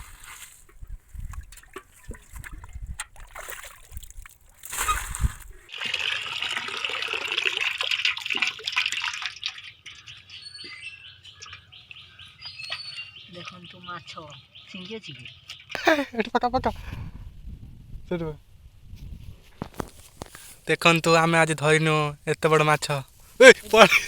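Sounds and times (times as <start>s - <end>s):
shallow water splashing: 0.0s - 10.1s
birds chirping: 9.8s - 16.2s.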